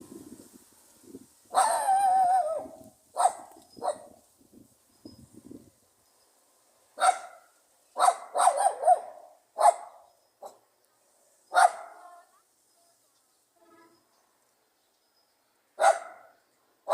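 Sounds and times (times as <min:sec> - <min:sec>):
dog barking: 0:01.6 - 0:04.1, 0:07.0 - 0:10.6, 0:11.5 - 0:12.1, 0:15.8 - 0:16.9.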